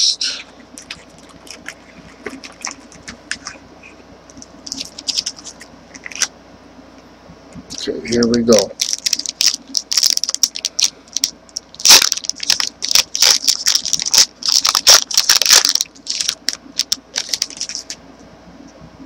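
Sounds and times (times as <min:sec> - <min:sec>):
wrapper tearing and crackling: 0:04.6 - 0:06.3, 0:08.5 - 0:18.0.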